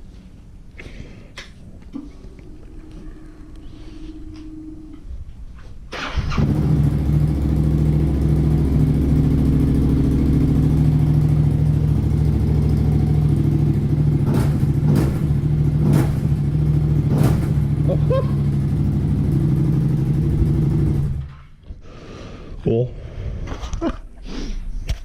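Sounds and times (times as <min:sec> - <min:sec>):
motorcycle engine idling: 0:06.4 - 0:21.3.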